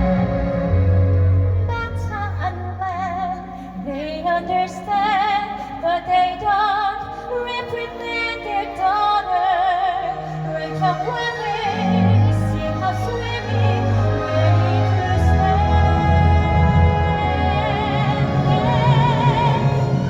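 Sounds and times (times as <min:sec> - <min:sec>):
sustained low accompaniment: 0:00.0 - 0:02.8, 0:11.8 - 0:20.0
woman singing with vibrato: 0:01.6 - 0:20.0.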